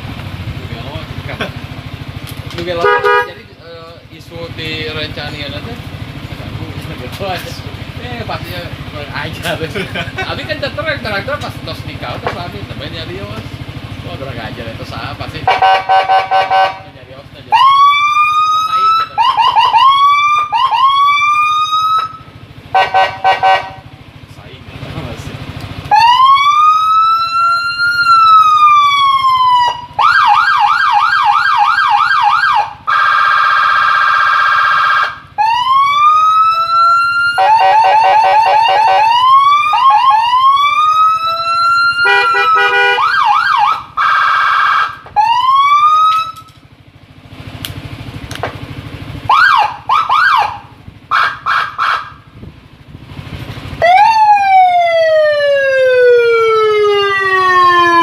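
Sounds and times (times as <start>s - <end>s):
electronic police siren: 17.5s - 23.8s, 25.9s - 46.6s, 49.3s - 52.3s, 53.8s - 58.0s
siren chirps: 17.5s - 23.9s, 25.9s - 46.6s, 49.3s - 52.3s, 53.8s - 58.0s.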